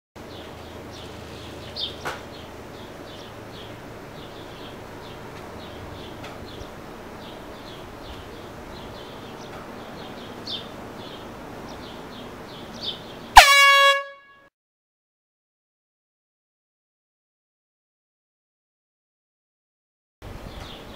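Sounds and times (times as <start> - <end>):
air horn blast: 13.4 - 14.5.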